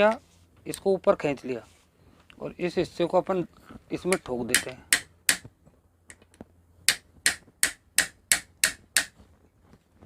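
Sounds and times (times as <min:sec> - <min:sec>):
hammer striking metal: 0:04.1 - 0:05.5, 0:06.9 - 0:09.1.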